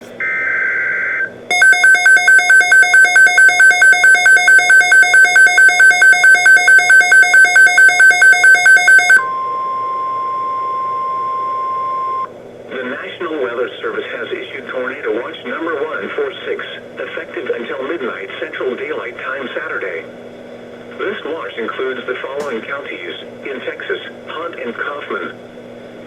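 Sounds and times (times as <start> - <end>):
steady warning alarm tone: 0.2 - 12.3
pulsing electronic alert beeps: 1.5 - 9.4.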